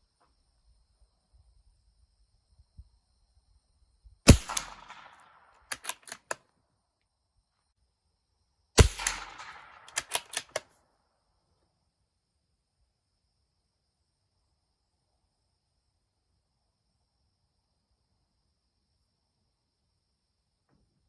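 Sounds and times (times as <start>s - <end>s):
rifle bolt clicks: 4.3s - 6.4s, 8.8s - 10.7s
rifle shots echoing: 4.3s - 6.4s, 8.8s - 10.6s.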